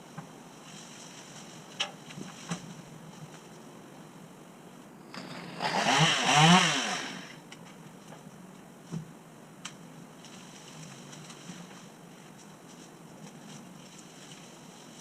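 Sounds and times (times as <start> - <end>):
chainsaw revving: 5.1 - 7.4.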